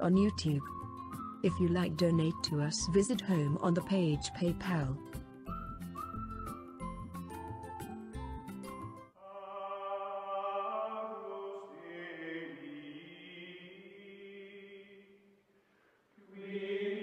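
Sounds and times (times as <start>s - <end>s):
chant-like choral music: 9.2s - 15.3s, 16.2s - 17.0s.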